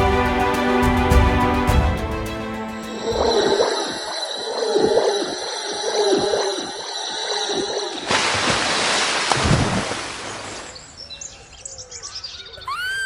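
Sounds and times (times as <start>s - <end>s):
music: 0.0s - 3.6s
water splash: 3.0s - 10.8s
faint birds chirping: 9.8s - 13.0s.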